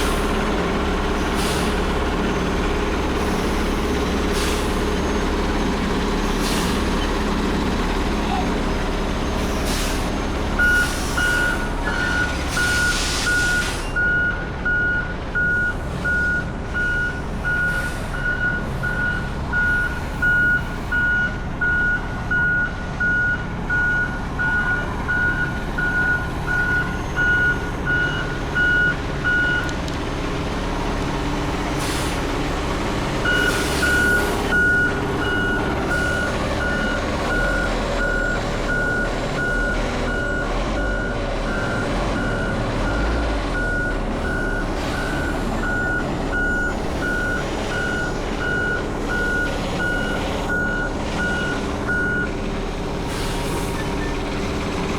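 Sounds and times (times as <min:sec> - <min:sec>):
diesel truck engine running: 0:00.0 - 0:54.9
reversing alarm beeping: 0:09.2 - 0:29.7, 0:33.2 - 0:52.4.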